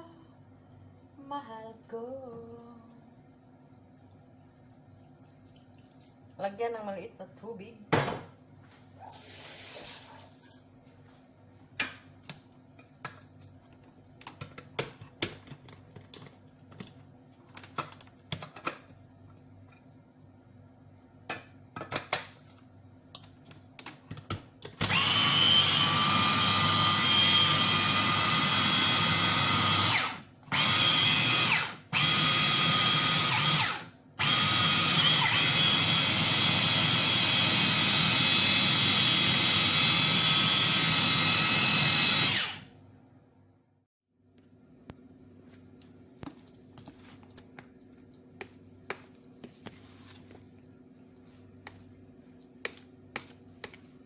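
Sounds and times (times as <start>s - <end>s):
electric blender grinding vegetables: 24.7s - 42.7s.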